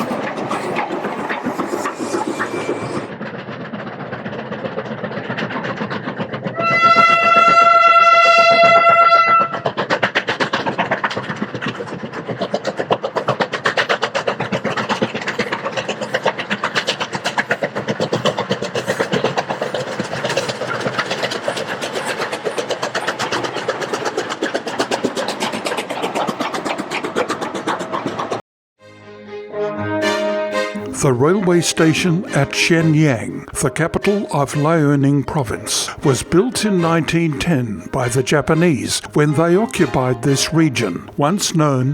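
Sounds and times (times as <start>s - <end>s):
locomotive rhythmic beat: 4.7s - 11.4s, 29.7s - 41.9s
locomotive whistle: 6.5s - 9.7s.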